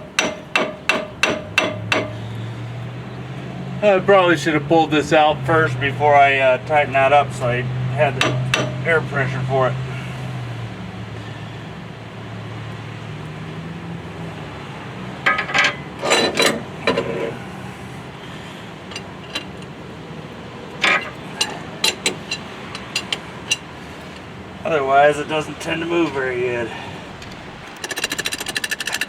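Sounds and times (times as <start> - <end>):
metal clinks and knocks: 0.0 - 2.3, 8.1 - 8.9, 15.2 - 17.5, 18.8 - 19.9, 20.7 - 24.4, 27.1 - 29.0.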